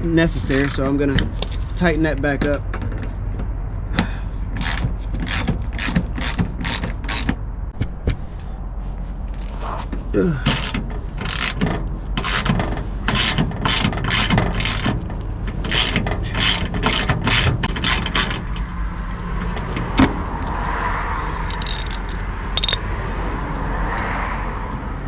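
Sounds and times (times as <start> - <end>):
hand ratchet clicking: 0.4 - 1.6, 4.0 - 7.4, 10.5 - 15.0, 15.6 - 18.6, 21.4 - 22.8
sharp knock: 7.8 - 8.5.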